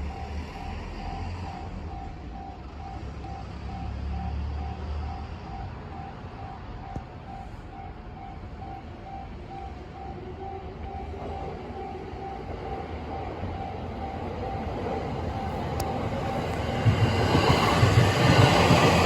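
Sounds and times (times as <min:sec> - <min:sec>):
level crossing warning bell: 0:00.0 - 0:19.0
electric train running noise: 0:08.8 - 0:19.0.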